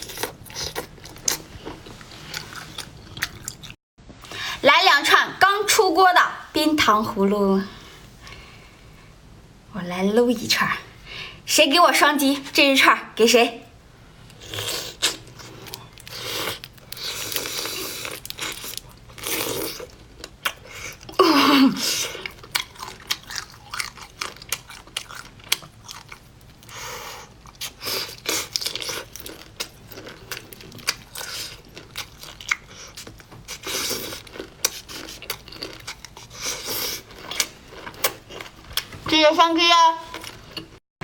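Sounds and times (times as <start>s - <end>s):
chewing: 0.0s - 3.8s, 22.1s - 38.9s
candy glaze crunching: 14.4s - 21.2s, 34.0s - 36.4s.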